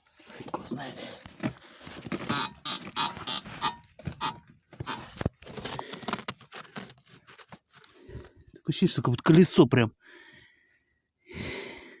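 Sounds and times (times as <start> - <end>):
suspension creaking and squeaking: 2.2 - 5.2.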